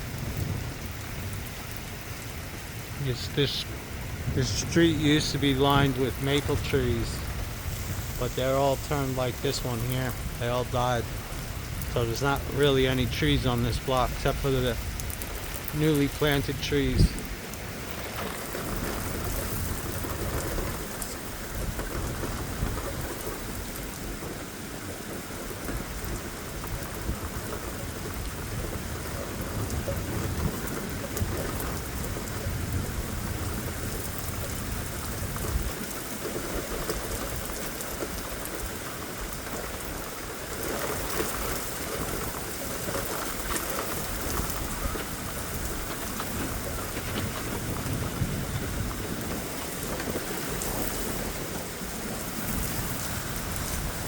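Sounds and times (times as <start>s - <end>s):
steady rain falling: 0.0s - 54.0s
wind buffeting microphone: 0.0s - 54.0s.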